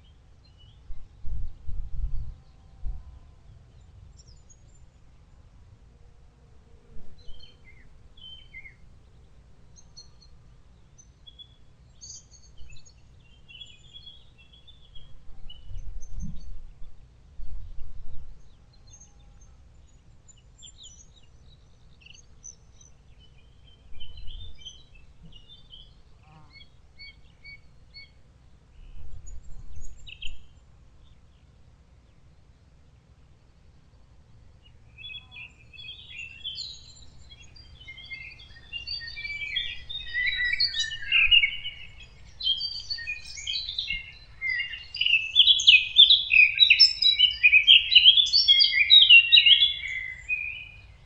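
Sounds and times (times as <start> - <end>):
songbirds chirping and singing: 20.4 - 28.2, 35.0 - 51.0.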